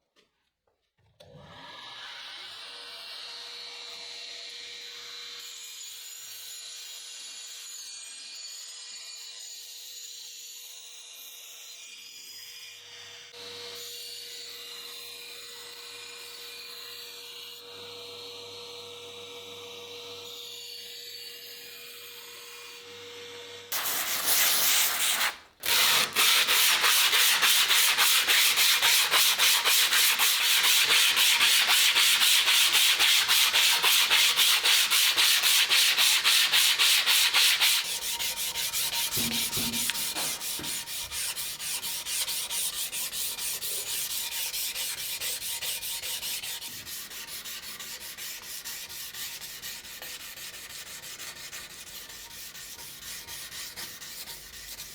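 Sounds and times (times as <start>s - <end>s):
abrasive rubbing on steel blade: 23.8s - 54.9s.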